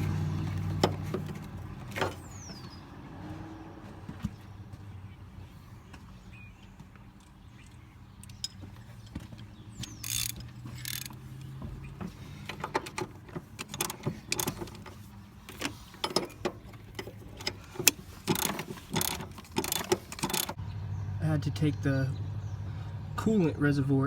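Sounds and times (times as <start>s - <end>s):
wrench and socket clicking on metal: 9.8s - 11.5s, 17.4s - 20.6s.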